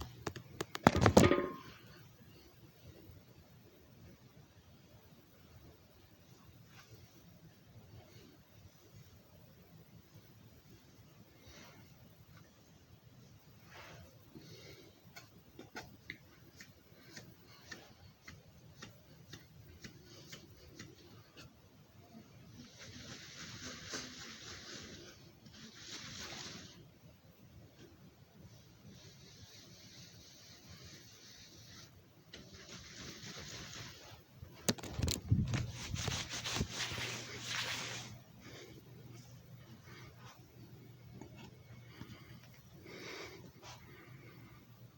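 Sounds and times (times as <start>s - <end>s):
rubbing and scraping by hand: 11.4s - 26.9s, 28.5s - 44.4s.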